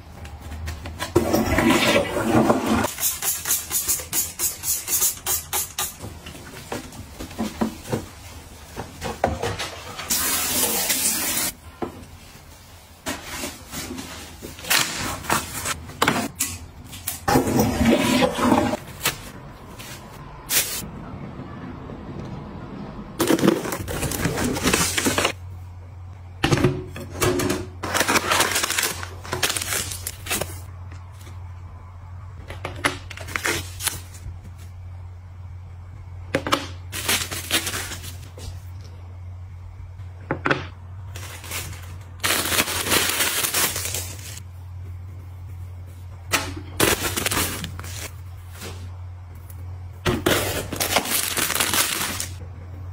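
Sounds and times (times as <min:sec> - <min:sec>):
steady low hum: 0:18.4 - 0:52.9.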